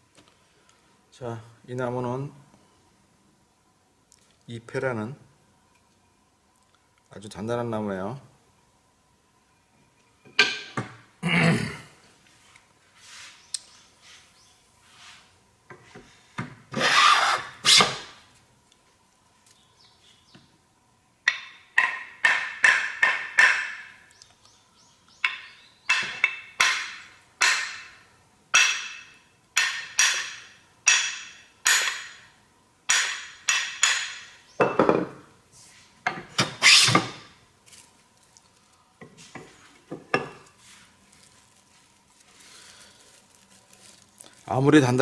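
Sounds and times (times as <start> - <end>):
hand plane shaving wood: 16.8 - 18.0.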